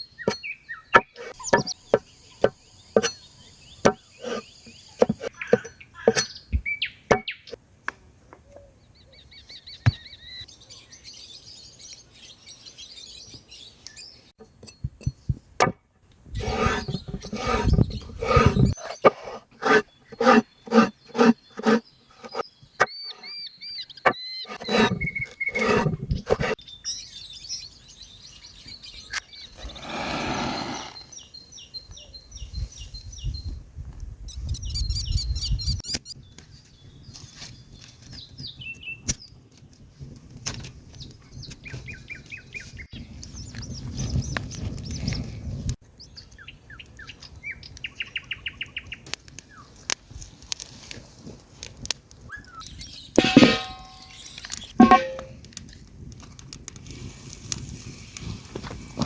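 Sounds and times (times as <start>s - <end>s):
birds chirping and singing: 0.0s - 7.6s, 16.4s - 29.9s.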